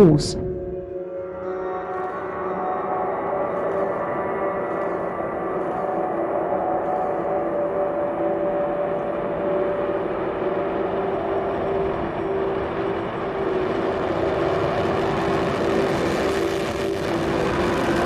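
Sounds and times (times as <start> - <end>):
rocket exhaust roar: 9.1 - 18.0.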